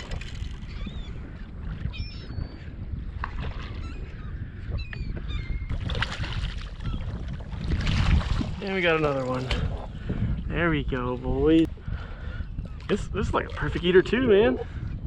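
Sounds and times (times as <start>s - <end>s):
water lapping: 0.0s - 4.7s, 5.7s - 14.9s
wind buffeting microphone: 0.0s - 15.0s
gulls squawking: 0.6s - 2.8s
splashing: 7.5s - 9.8s.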